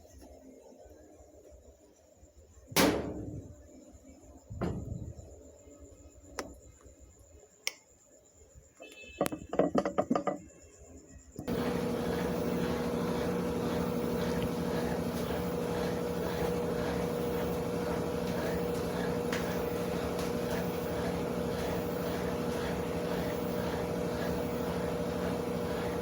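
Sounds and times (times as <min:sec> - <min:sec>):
drain pump humming: 0:11.4 - 0:26.0.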